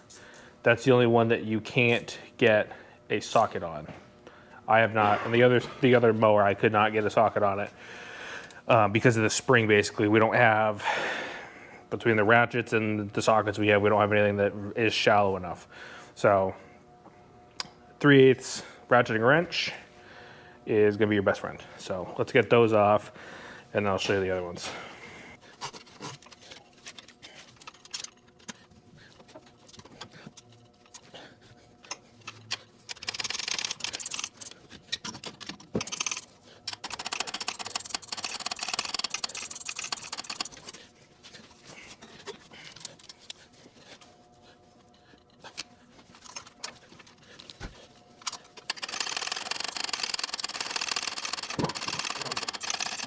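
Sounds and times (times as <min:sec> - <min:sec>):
ratcheting wrench clicking: 0:31.9 - 0:40.8, 0:48.2 - 0:53.0.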